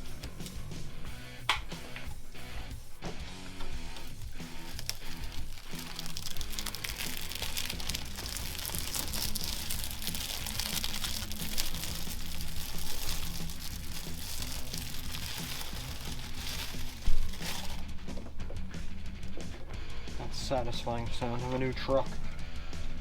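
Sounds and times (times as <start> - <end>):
quiet background music: 0.0 - 23.0
plastic packaging crinkling: 3.6 - 18.2.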